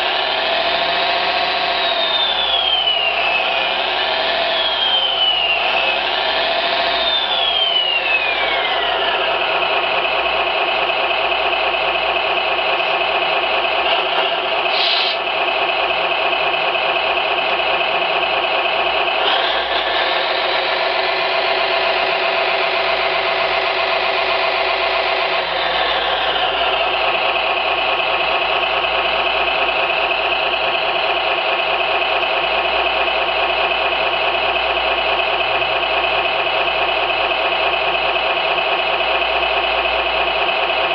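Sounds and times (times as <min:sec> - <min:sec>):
simulated engine sound from speaker: 0:00.0 - 0:40.9.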